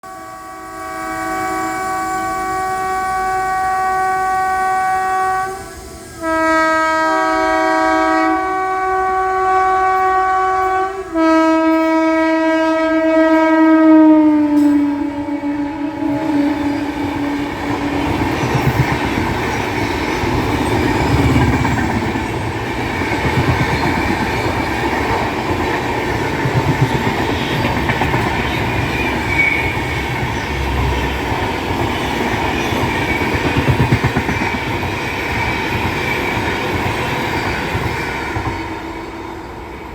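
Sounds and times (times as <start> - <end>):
locomotive air horn blasts: 0.0 - 18.0
train wheels rumbling and clattering: 14.4 - 39.9.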